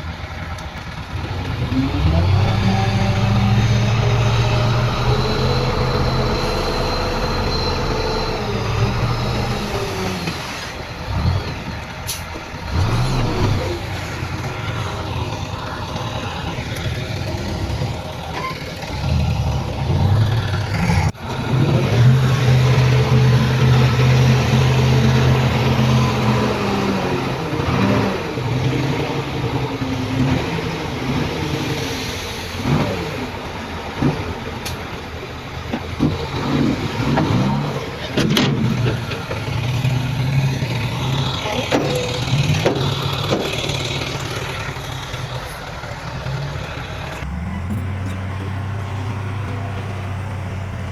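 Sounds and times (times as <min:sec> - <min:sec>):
diesel earthmoving machinery revving: 0:00.1 - 0:34.3, 0:45.9 - 0:50.9.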